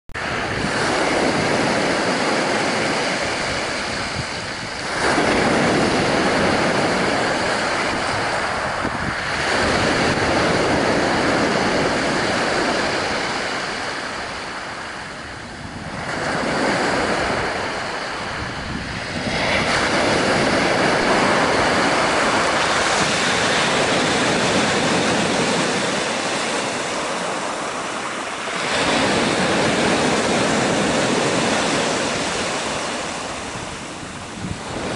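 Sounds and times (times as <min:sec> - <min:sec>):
waves breaking on shore: 0:00.2 - 0:34.9.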